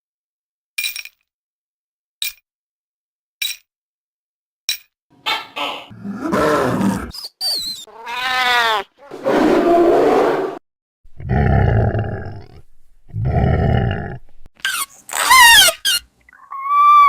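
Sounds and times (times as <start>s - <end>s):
creature cry: 5.8s - 7.2s, 7.9s - 10.2s, 16.4s - 17.0s
rasping growl: 5.9s - 7.2s, 9.0s - 14.3s
high wavering squeaks: 7.2s - 8.8s, 14.6s - 17.0s.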